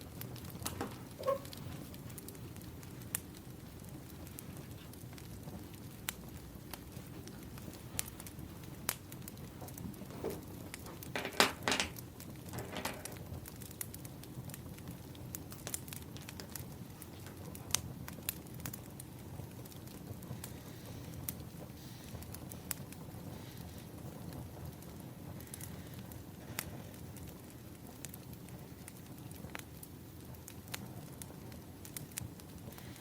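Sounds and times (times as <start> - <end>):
sharp pops from fire: 0.0 - 33.0
wood fire crackling: 0.0 - 33.0.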